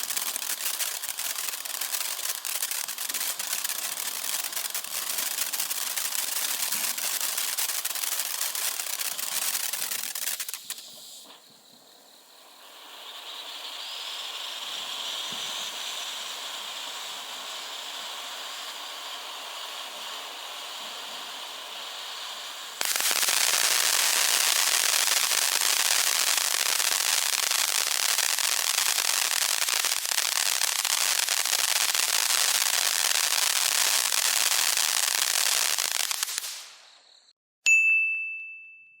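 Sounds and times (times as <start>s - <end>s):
dense crackling hiss: 0.0s - 37.3s
firework fountain hissing: 0.0s - 37.3s
bright ding: 37.6s - 39.0s.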